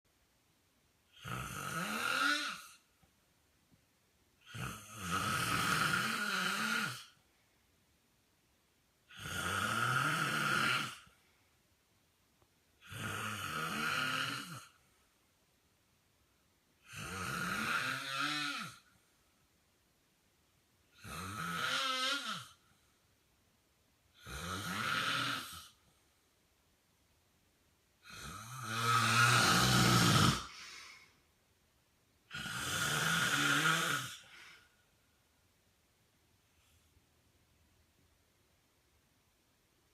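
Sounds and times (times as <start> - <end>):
man snoring: 1.1 - 2.8, 4.4 - 7.2, 9.1 - 11.2, 12.8 - 14.8, 16.8 - 18.9, 20.9 - 22.6, 24.1 - 25.8, 28.0 - 30.9, 32.3 - 34.6.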